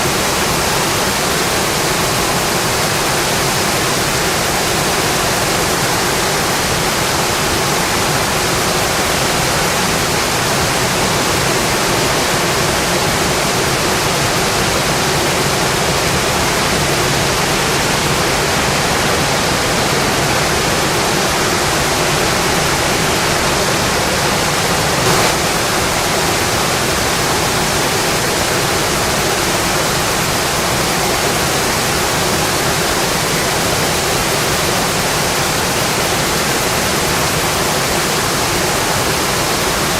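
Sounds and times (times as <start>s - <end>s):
steady rainfall: 0.0s - 39.9s
louder tap: 25.0s - 25.6s.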